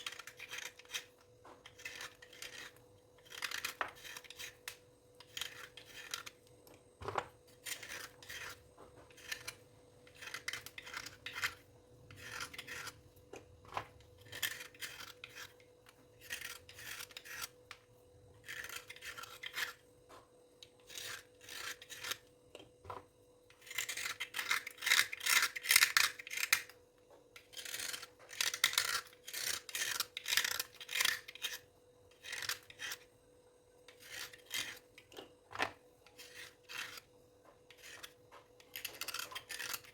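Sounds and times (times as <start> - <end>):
scalp scratching: 0.0 - 6.4, 7.5 - 13.0, 14.2 - 17.6, 18.4 - 19.8, 20.8 - 22.3, 27.4 - 33.1, 33.9 - 35.0, 36.1 - 37.1, 37.7 - 39.9.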